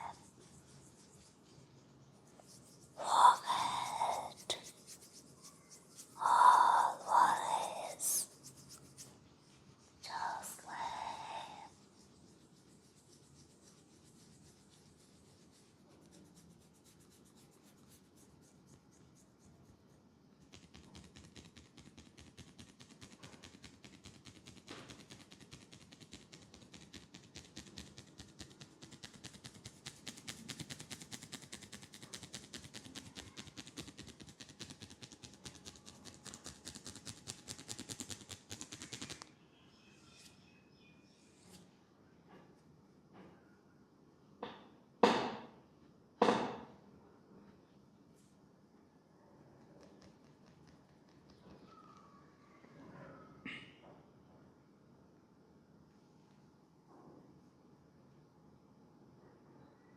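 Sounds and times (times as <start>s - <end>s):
fast scratching strokes: 0.0s - 39.2s.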